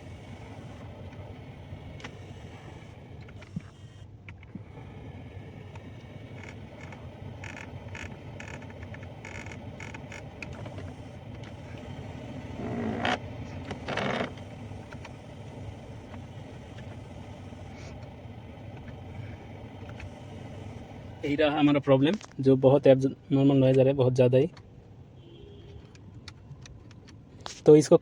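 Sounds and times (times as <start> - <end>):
actuator clicking: 0.0 - 22.3
actuator grinding: 0.0 - 22.4
steady low hum: 0.0 - 25.2.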